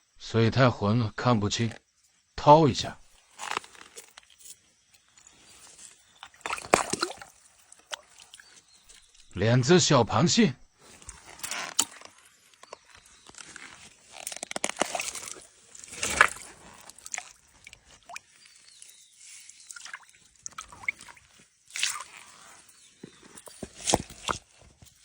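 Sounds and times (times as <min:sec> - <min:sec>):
stones shifting and knocking: 0:03.3 - 0:09.4, 0:10.9 - 0:17.9, 0:21.8 - 0:25.0
hands splashing in stream water: 0:05.6 - 0:09.2, 0:14.7 - 0:22.5.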